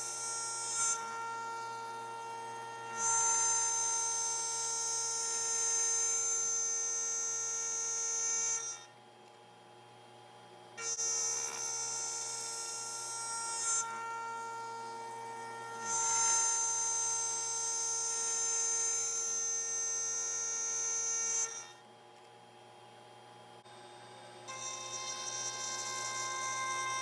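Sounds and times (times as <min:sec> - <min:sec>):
router spindle whining: 0:24.5 - 0:27.0.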